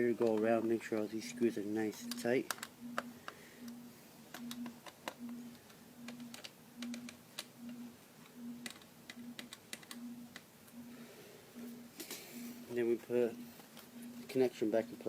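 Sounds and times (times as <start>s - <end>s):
pulsing low tone: 1.2s - 15.0s.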